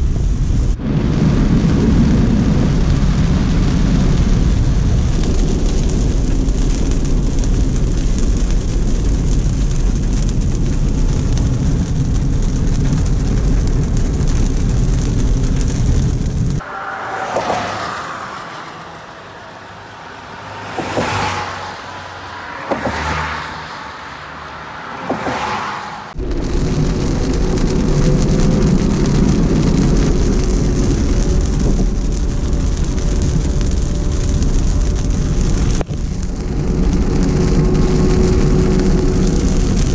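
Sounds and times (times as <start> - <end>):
wind on microphone: 0.0 - 16.6, 26.1 - 39.9
rain: 0.0 - 39.9
vehicles passing on wet road: 0.0 - 39.9.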